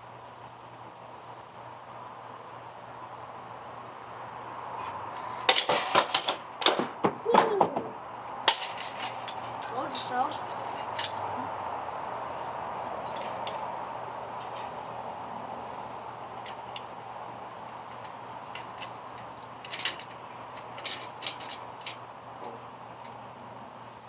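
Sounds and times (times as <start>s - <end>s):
fan parts clicking: 12.1s - 15.0s, 16.4s - 23.4s.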